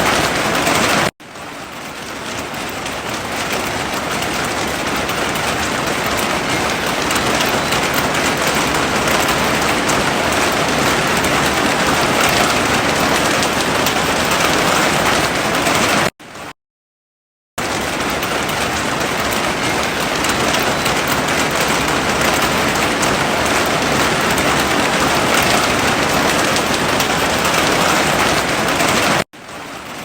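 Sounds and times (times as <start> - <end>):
heavy rain hissing: 3.8 - 16.1, 17.8 - 29.2.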